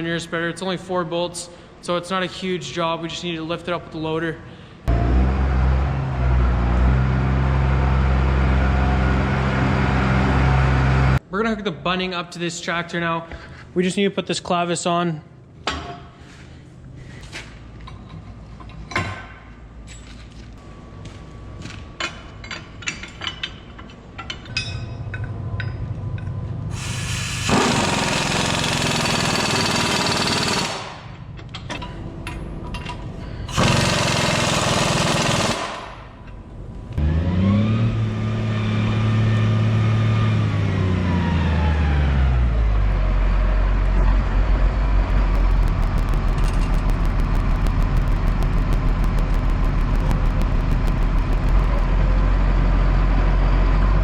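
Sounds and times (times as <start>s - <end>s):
tractor engine running: 43.8s - 52.6s
loud rushing noises: 45.1s - 52.0s.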